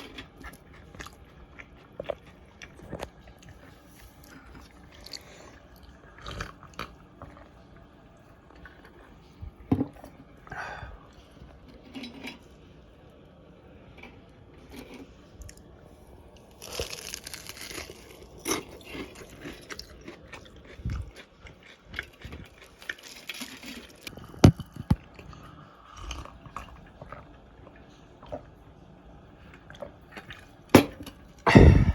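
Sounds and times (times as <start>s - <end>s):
crunching bites and chewing: 0.0s - 7.6s, 16.3s - 28.5s.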